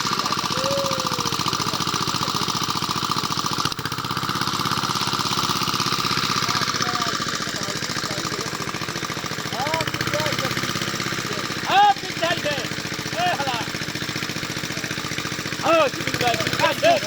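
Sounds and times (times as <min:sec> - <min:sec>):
small engine chugging: 0:00.0 - 0:17.0.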